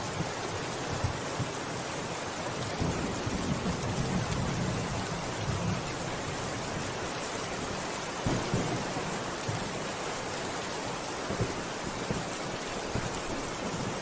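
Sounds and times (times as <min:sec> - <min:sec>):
steady rain falling: 0:00.0 - 0:14.0
thunder rumbling: 0:08.2 - 0:09.9.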